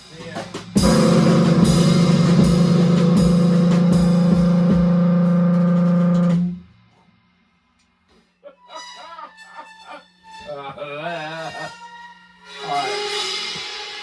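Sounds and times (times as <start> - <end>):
bass drum beats: 0.0 - 6.8
cymbals: 0.0 - 6.8, 12.0 - 14.0
held note from amplified instrument: 0.8 - 6.6.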